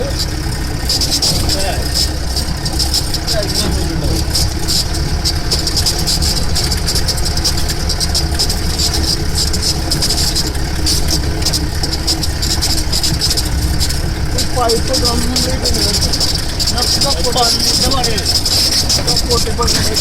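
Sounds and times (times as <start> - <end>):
engine running: 0.0 - 20.0
vehicle rattling and knocking: 0.0 - 20.0.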